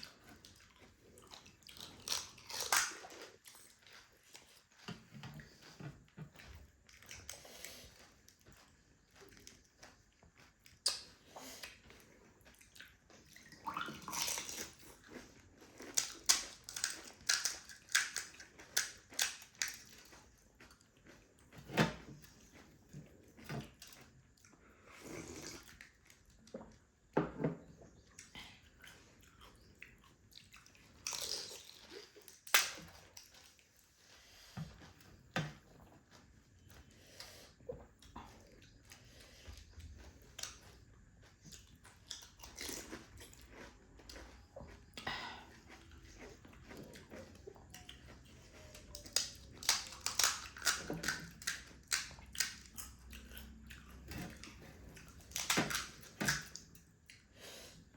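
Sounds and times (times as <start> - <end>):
person biting and chewing: 0.0 - 4.6, 29.2 - 33.5, 41.4 - 56.8
crisp shells cracking: 49.2 - 52.6.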